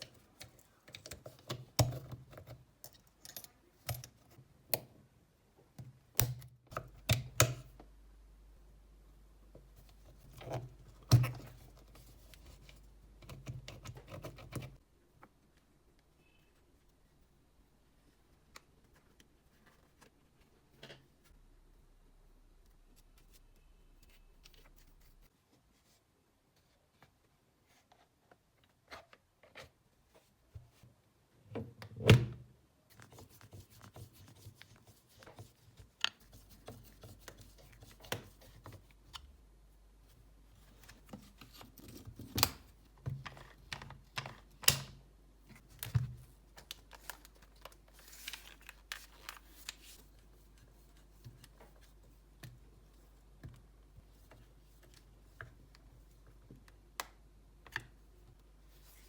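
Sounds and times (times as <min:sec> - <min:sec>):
parts and tools handled on workbench: 0:00.0 - 0:04.9, 0:40.1 - 0:56.6.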